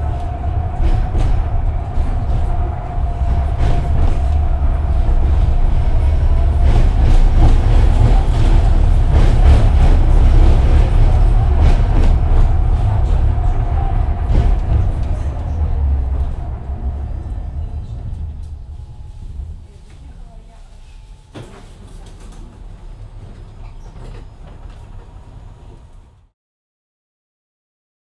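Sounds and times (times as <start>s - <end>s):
tram rumbling on rails: 0.0s - 26.3s
tram whine: 0.0s - 26.3s
wheels clacking and knocking: 0.1s - 16.6s.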